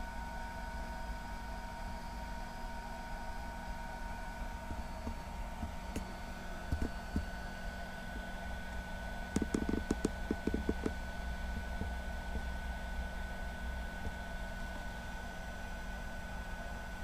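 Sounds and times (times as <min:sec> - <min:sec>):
steady low hum: 0:00.0 - 0:17.0
handling clicks and taps: 0:09.4 - 0:11.0.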